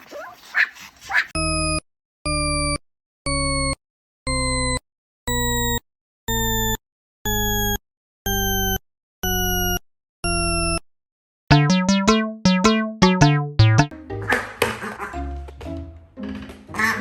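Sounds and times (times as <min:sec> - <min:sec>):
electronic beep tones: 0:11.5 - 0:13.9
keyboard music with plucked notes: 0:11.5 - 0:14.2.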